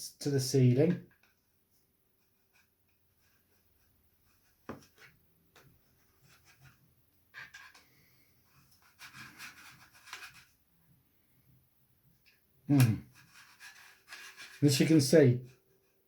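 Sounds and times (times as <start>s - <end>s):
plastic rubbing and scraping: 8.6s - 10.6s, 13.0s - 14.9s.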